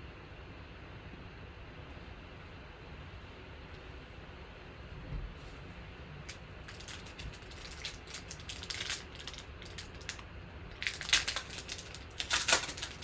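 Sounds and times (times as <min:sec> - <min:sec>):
cards being handled: 0:06.3 - 0:13.0
wrapper crinkling: 0:06.3 - 0:13.0.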